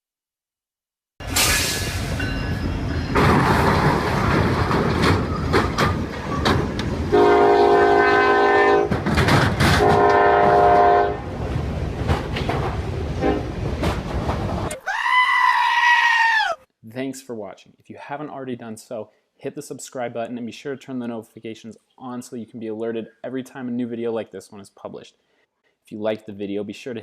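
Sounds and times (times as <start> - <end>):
train wheels clicking: 3.1 - 7.1, 8.8 - 10.6
train horn blasts: 7.1 - 9.0, 9.8 - 11.3, 13.2 - 13.6.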